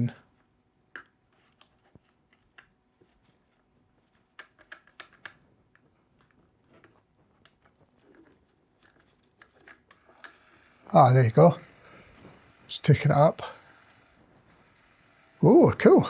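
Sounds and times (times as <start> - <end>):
plastic clicks and taps: 0.9 - 2.7, 4.4 - 6.4.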